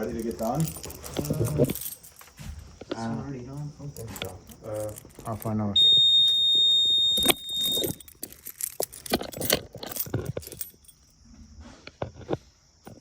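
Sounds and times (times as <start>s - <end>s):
metallic clicks and jangling: 0.0s - 2.5s, 3.5s - 5.7s, 7.1s - 11.2s
fire alarm tone: 5.8s - 8.0s.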